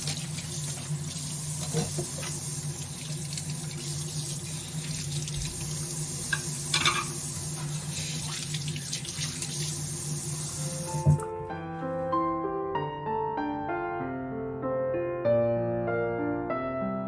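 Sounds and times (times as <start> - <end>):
tap water running into sink: 0.0 - 11.3
soft piano music: 9.8 - 17.0.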